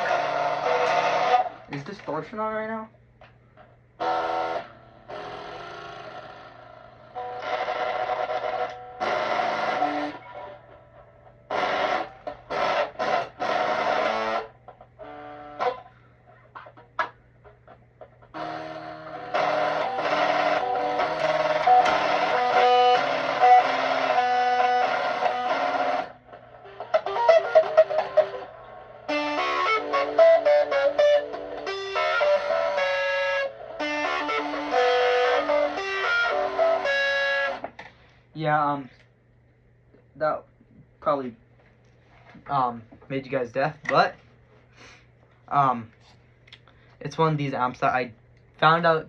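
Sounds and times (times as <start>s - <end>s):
distorted electric guitar: 0.0s - 2.9s, 3.6s - 38.0s
low amp hum: 0.0s - 49.0s.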